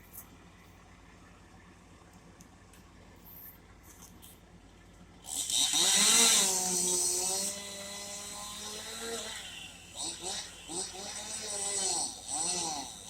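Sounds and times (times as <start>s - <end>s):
chainsaw running: 5.1s - 13.0s.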